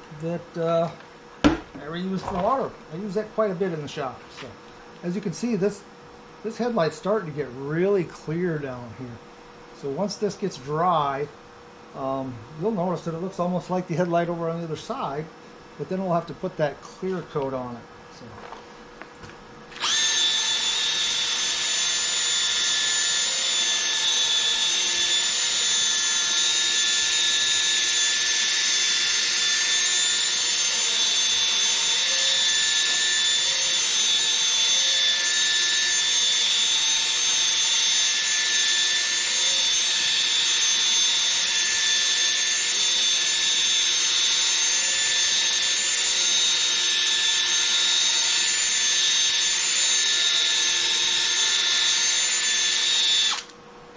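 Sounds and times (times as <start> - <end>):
cordless drill motor whine: 19.7 - 53.6.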